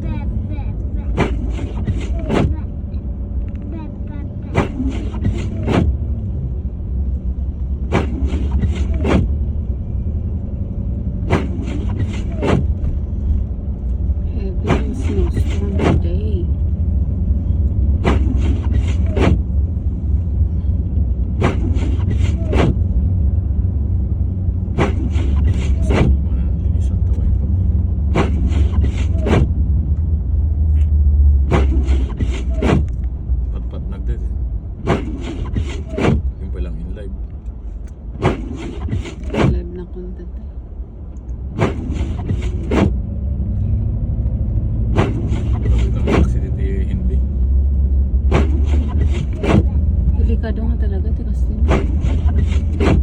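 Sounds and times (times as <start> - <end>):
car engine and road rumble: 0.0 - 53.0
scraping or crunching: 1.1 - 2.6, 4.5 - 6.0, 7.8 - 9.4, 11.2 - 13.0, 18.0 - 19.5, 21.4 - 22.8, 24.7 - 26.2, 28.1 - 29.6, 31.4 - 33.0, 34.8 - 36.4, 38.2 - 39.6, 41.6 - 43.0, 44.9 - 46.5, 48.2 - 49.8, 51.6 - 53.0
quick whooshes: 4.5 - 6.0, 7.8 - 9.3, 11.2 - 12.9, 18.0 - 19.5, 21.4 - 22.9, 24.7 - 26.2, 28.1 - 29.6, 31.4 - 33.0, 34.8 - 36.4, 38.2 - 39.6, 41.6 - 43.0, 44.9 - 46.4, 48.3 - 49.8, 51.7 - 53.0.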